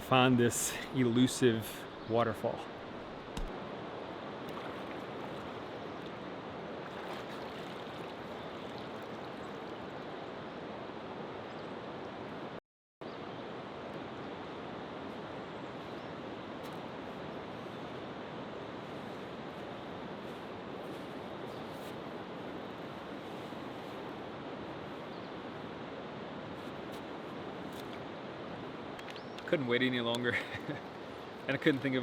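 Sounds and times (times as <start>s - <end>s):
river water rushing: 0.0s - 10.0s.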